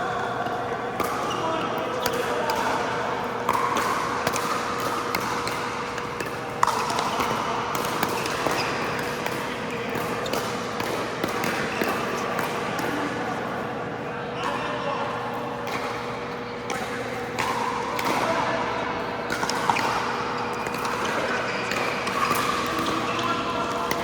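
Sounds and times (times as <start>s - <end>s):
ball bouncing on court: 1.0s - 12.6s.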